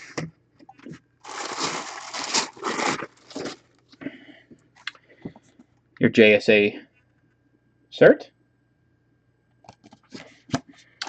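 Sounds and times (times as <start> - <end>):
packaging crinkling: 0.8 - 3.9.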